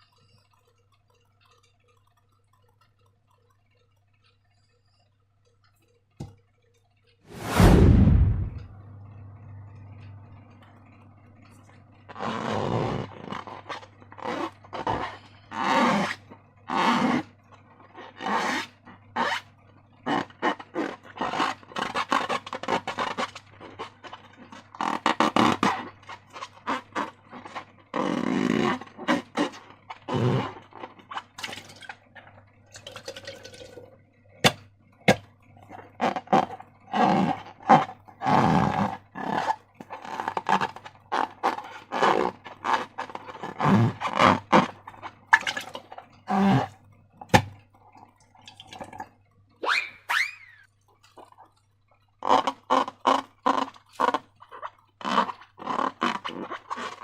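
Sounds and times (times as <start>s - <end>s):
steady low hum: 0.1s - 18.1s
wet slime squelching: 34.4s - 57.0s.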